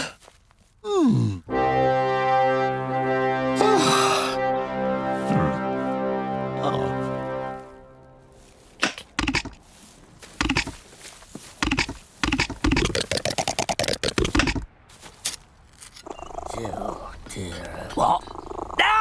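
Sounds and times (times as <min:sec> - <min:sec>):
music: 0:01.5 - 0:08.8
sharp knocks and clicks clatter: 0:08.8 - 0:09.6, 0:10.4 - 0:10.8, 0:11.6 - 0:14.7.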